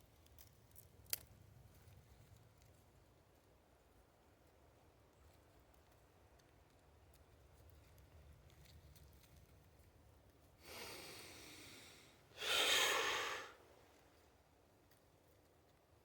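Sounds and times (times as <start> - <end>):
person breathing heavily: 10.6 - 13.6.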